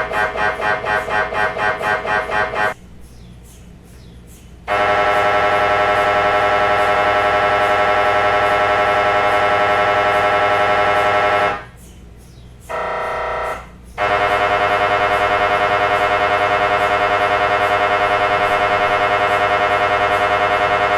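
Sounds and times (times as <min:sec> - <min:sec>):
mri scanner pulsing drone: 0:00.0 - 0:02.8, 0:04.7 - 0:11.8, 0:12.7 - 0:20.9.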